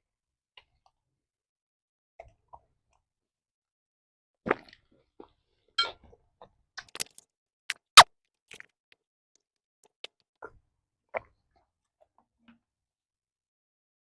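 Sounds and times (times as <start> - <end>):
person chewing food: 7.0 - 8.0.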